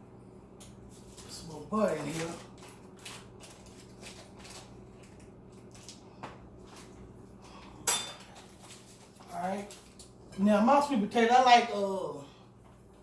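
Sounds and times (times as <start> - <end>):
low steady hum: 0.0 - 13.0
kitchen clatter: 7.8 - 10.5.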